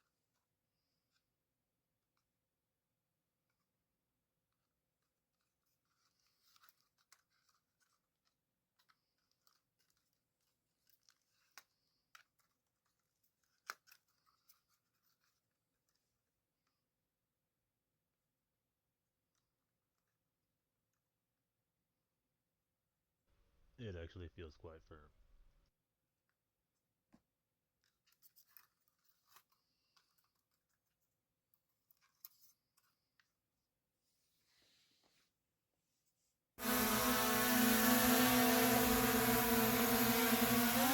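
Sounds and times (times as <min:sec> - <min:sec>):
plastic parts clicking and scratching: 0:04.5 - 0:16.7, 0:27.8 - 0:33.4.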